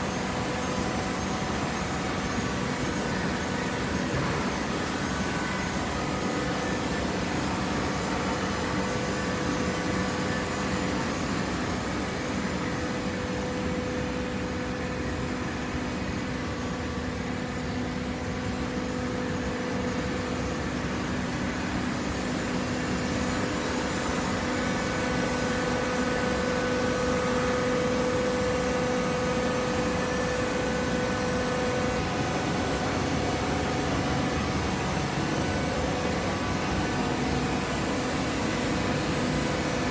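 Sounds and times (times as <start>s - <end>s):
hydraulic baler humming with whine: 0.0s - 39.9s.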